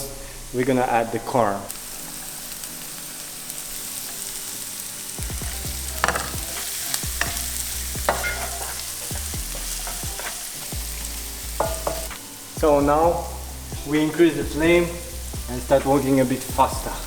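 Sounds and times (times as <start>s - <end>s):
food sizzling in a frying pan: 0.0s - 17.0s
spatula scraping a pan: 5.9s - 12.2s.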